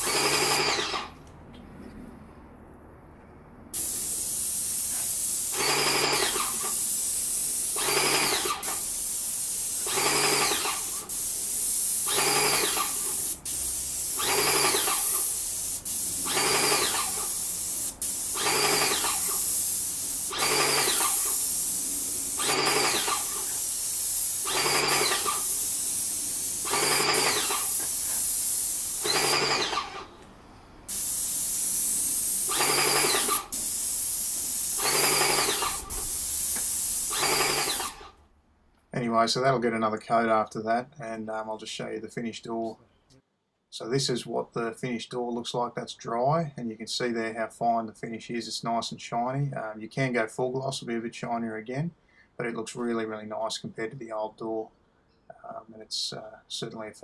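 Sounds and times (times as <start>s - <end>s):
paint sprayer hissing: 0.0s - 1.1s, 3.7s - 30.2s, 30.9s - 38.2s.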